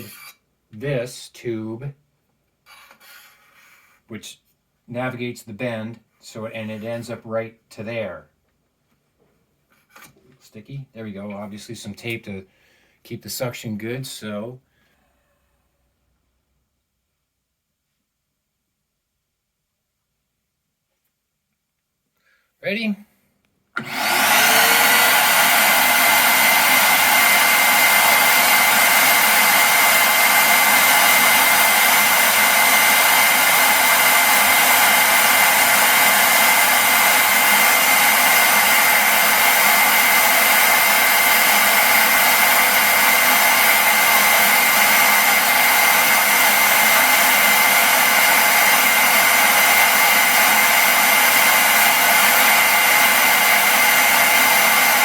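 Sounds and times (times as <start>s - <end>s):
vacuum cleaner whining: 0.0s - 0.4s, 23.8s - 55.0s.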